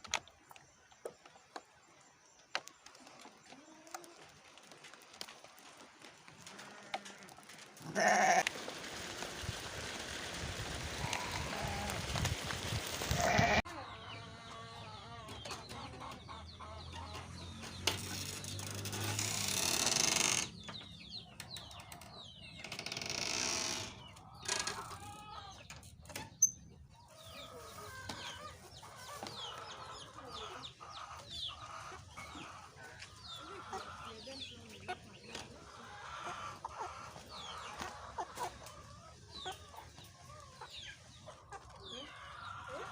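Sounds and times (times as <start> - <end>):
farm animal calls: 6.4 - 8.5, 10.9 - 12.2, 13.0 - 17.2
chickens clucking: 8.4 - 19.5, 20.3 - 23.0, 23.9 - 42.9.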